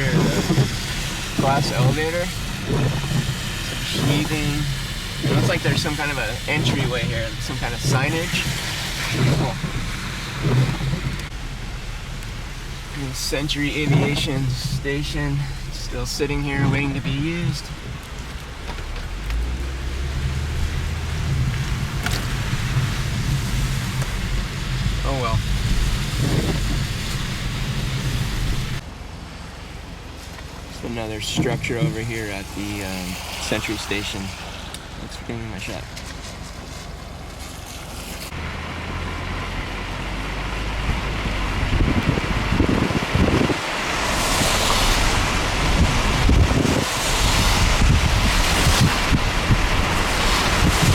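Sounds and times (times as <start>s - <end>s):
wind buffeting microphone: 0.0s - 28.8s, 39.4s - 50.9s
car engine humming: 0.0s - 50.9s
steady rain: 0.0s - 50.9s
tyres hissing on wet road: 0.0s - 50.9s.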